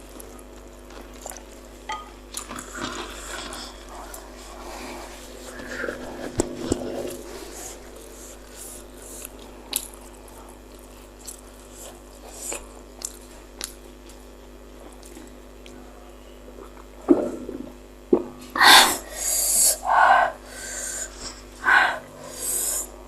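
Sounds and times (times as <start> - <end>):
person chewing: 8.6 - 14.2.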